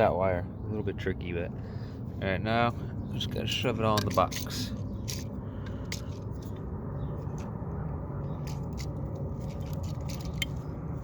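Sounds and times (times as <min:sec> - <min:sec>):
low background rumble: 0:00.0 - 0:11.0
clicks and scrapes of wires: 0:08.3 - 0:10.7.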